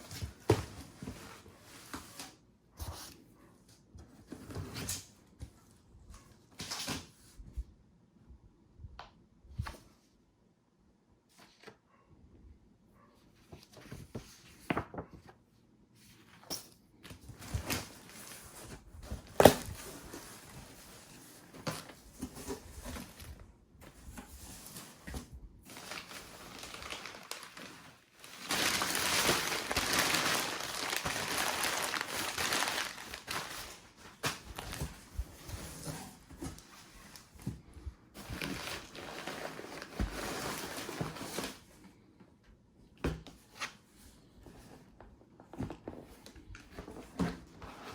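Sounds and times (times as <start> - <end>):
packaging crinkling and rustling: 17.1 - 37.5, 38.2 - 41.7.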